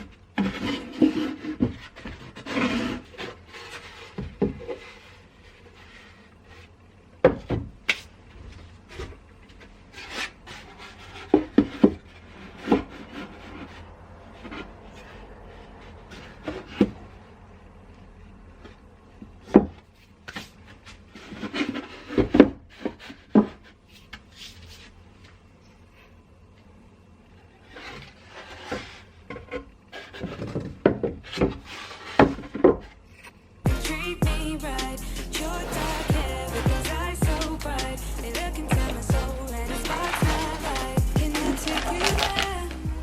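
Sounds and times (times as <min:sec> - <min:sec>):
wood rubbing and scraping: 0:00.0 - 0:06.8, 0:08.4 - 0:17.2, 0:27.6 - 0:43.0
wooden boards knocking: 0:38.7 - 0:42.4.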